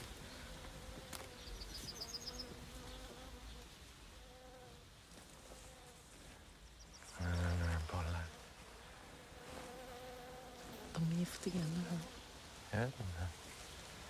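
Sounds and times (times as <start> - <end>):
flying insect buzzing: 0.5 - 6.2, 7.2 - 12.4.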